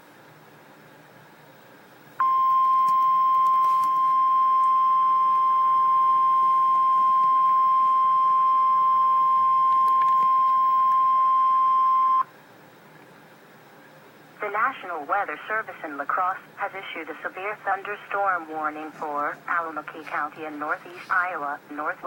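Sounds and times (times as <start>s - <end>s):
steady alarm tone: 2.2s - 12.2s.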